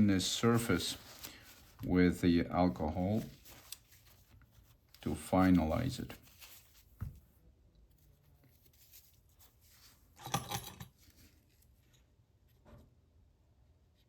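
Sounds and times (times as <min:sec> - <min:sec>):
scratchy rustle: 0:00.2 - 0:01.8, 0:02.8 - 0:07.3, 0:08.0 - 0:10.2.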